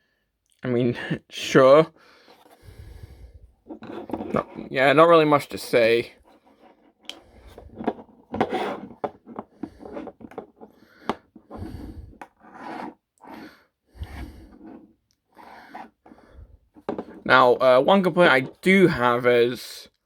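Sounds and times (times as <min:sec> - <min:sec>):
plastic rubbing and scraping: 0:03.6 - 0:18.8.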